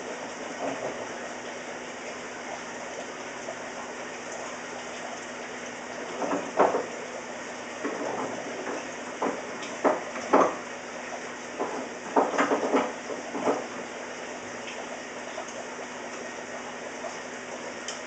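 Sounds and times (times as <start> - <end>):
running water: 0.0 - 18.0
knocks and clatters: 11.6 - 13.7.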